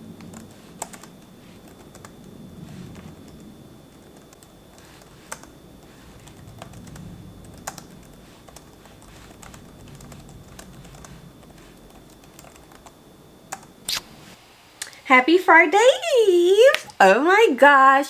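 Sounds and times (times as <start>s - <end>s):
typing on a computer keyboard: 0.2s - 12.9s, 13.5s - 13.7s.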